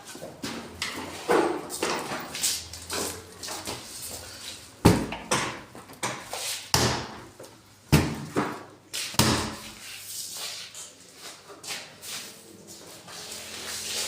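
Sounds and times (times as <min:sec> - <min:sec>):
sharp knocks and bangs: 0:04.8 - 0:07.2, 0:09.2 - 0:09.6.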